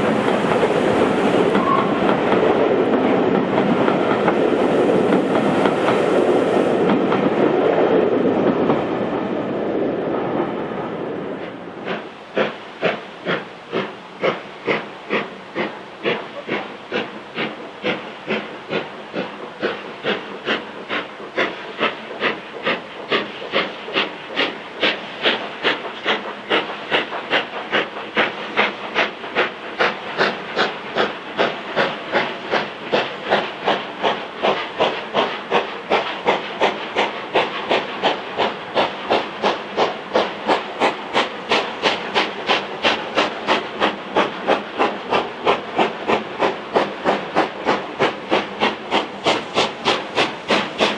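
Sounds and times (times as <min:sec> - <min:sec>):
steam locomotive chuffing: 0:00.0 - 0:50.9.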